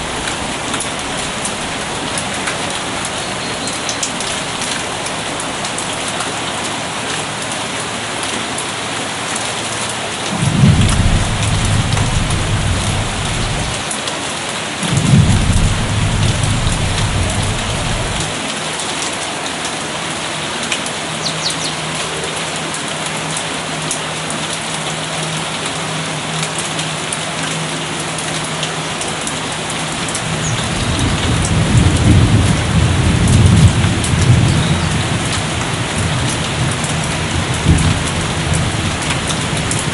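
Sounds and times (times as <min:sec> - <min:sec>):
steady rain: 0:00.0 - 0:39.9
distant thunder rumbling: 0:10.3 - 0:13.8, 0:14.8 - 0:18.3.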